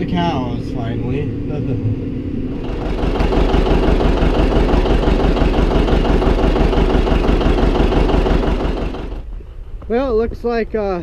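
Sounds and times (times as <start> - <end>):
farm machine engine running: 2.5 - 10.7.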